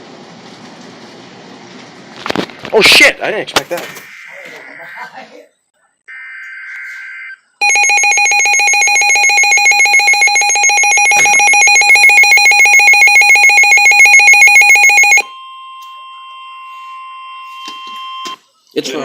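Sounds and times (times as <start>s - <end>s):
pulsing electronic alert alarm: 4.0s - 5.2s, 6.1s - 18.5s
steady warning alarm tone: 4.0s - 5.3s, 6.1s - 18.6s.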